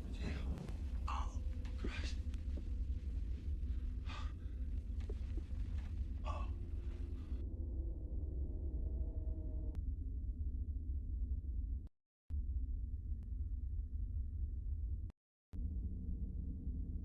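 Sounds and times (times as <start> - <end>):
steady low hum: 0.0 - 11.8
person gasping: 6.2 - 6.6.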